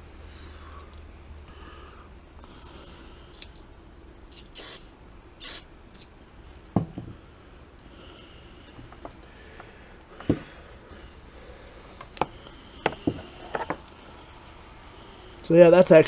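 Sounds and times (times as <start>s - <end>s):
short hissing bursts: 2.4s - 3.6s, 4.4s - 6.7s, 7.8s - 9.2s.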